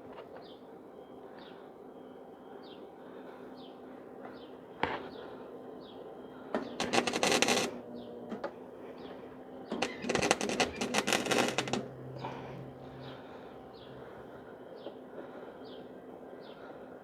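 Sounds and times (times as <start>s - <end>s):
arc welder crackling: 6.7s - 7.8s, 9.7s - 12.0s.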